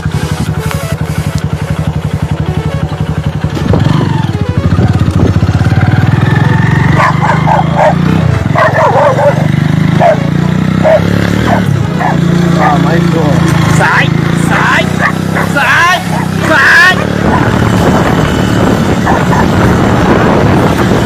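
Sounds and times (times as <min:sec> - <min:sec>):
vehicle engine running: 0:00.0 - 0:21.0
dogs barking: 0:06.8 - 0:13.1, 0:14.5 - 0:20.0.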